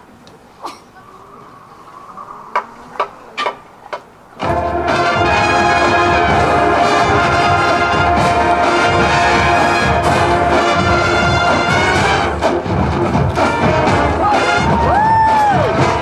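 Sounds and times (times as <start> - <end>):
drums: 4.4 - 16.0
massed band brass chords: 4.4 - 16.0.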